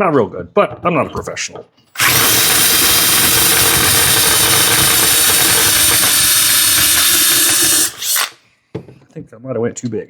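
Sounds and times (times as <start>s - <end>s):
power drill whirring: 2.0s - 8.4s.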